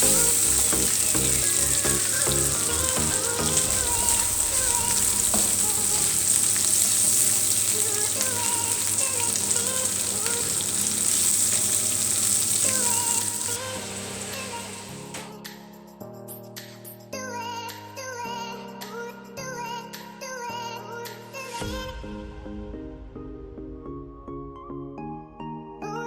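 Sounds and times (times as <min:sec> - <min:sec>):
prawns sizzling in hot oil: 0:00.0 - 0:15.2.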